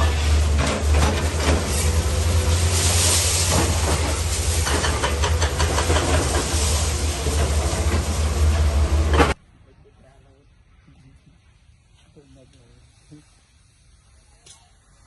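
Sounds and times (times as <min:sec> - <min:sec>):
broad hiss: 0:00.0 - 0:09.4, 0:11.6 - 0:15.0
excavator diesel engine drone: 0:00.0 - 0:09.4.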